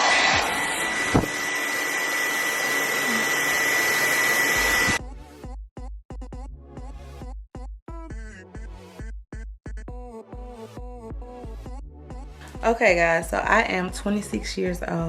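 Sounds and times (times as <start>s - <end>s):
hair dryer running: 0.0s - 5.0s
electronic music with a beat: 7.9s - 12.4s.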